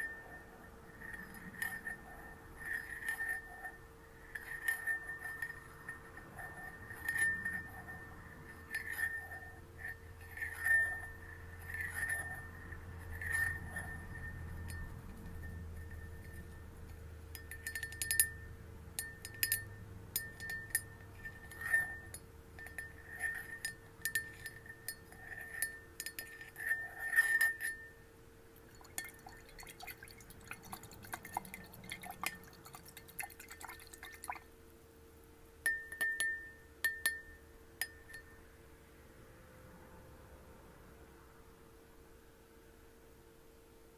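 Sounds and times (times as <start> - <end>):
glass tapping with ringing note: 0.0 - 28.0, 35.6 - 38.5.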